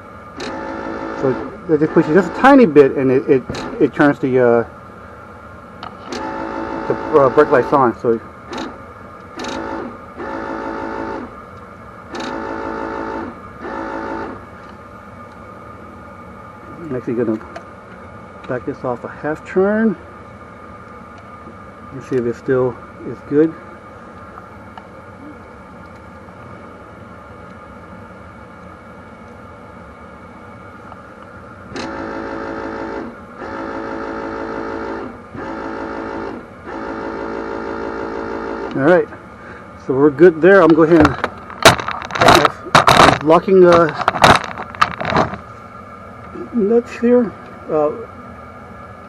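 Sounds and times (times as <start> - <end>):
electric buzzer: 0.4 - 2.6, 6.1 - 7.7, 9.4 - 11.3, 12.1 - 14.4, 31.7 - 38.8
electronic buzzer tone: 0.4 - 2.6, 12.2 - 14.4.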